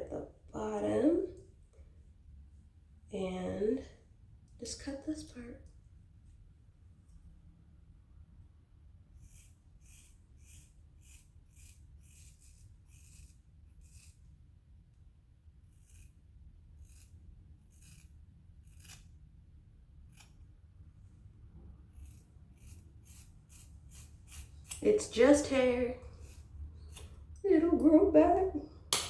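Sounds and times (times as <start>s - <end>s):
scissors snipping hair: 22.0s - 27.1s.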